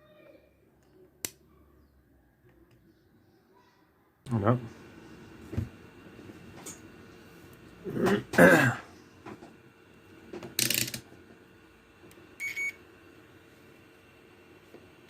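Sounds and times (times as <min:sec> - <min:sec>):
person clearing throat: 0:07.8 - 0:08.9
multimeter electronic beep: 0:12.4 - 0:12.8.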